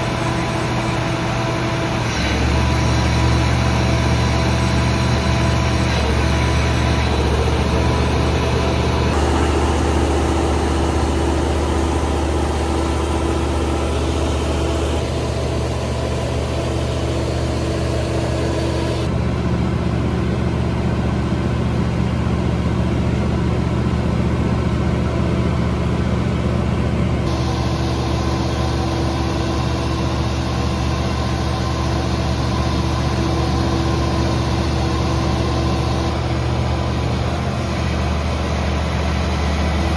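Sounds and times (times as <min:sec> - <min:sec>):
generator engine humming: 0:00.0 - 0:39.9.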